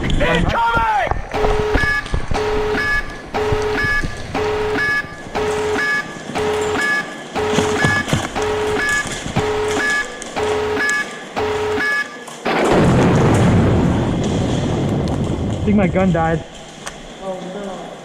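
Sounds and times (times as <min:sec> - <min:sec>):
two-tone alarm: 0:01.3 - 0:12.3.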